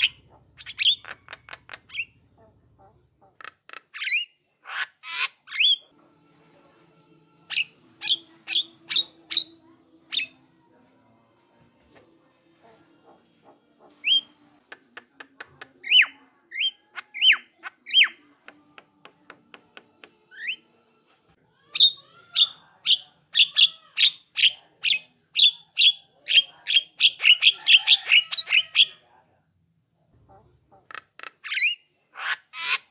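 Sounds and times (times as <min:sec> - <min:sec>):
myna calling: 0:00.0 - 0:05.9.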